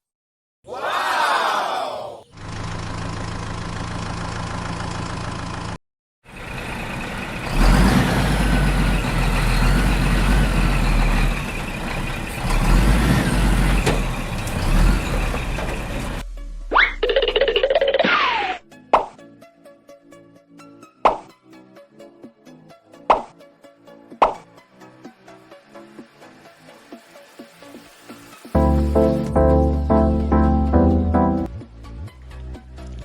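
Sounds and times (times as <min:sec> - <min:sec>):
vehicle engine running: 0:02.3 - 0:17.4.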